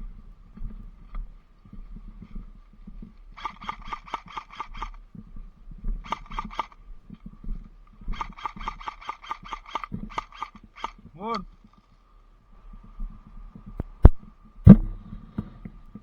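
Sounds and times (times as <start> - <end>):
airsoft rifle firing bursts: 3.3 - 5.1, 6.0 - 6.9, 8.0 - 11.4.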